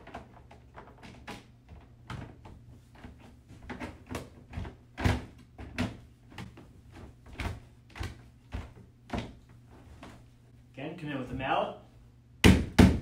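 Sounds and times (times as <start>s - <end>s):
plastic panels knocking and clicking: 0.0s - 9.5s.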